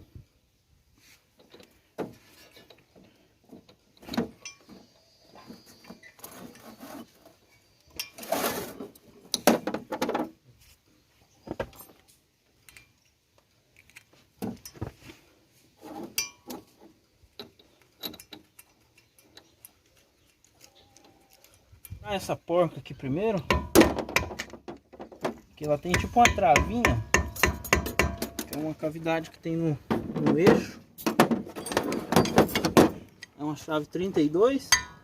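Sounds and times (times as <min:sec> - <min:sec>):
metal tools clinking on brake hub: 0:04.4 - 0:04.7, 0:16.2 - 0:16.6, 0:34.6 - 0:35.0.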